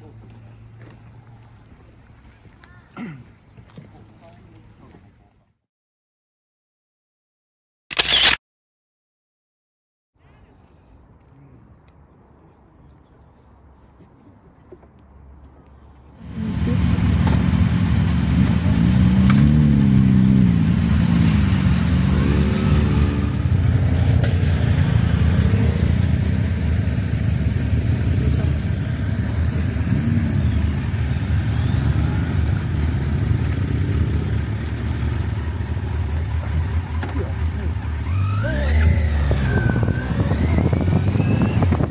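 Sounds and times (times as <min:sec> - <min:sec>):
wind and road noise: 0:10.6 - 0:41.9
motorcycle engine running: 0:16.2 - 0:41.9.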